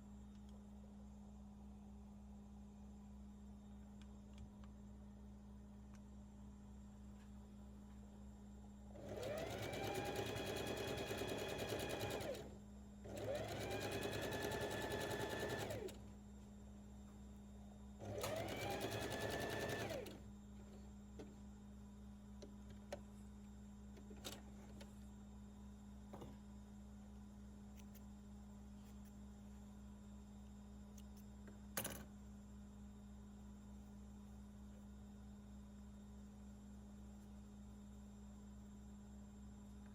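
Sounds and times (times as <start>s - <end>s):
sewing machine stitching: 9.0s - 12.5s, 13.1s - 16.0s, 18.0s - 20.2s.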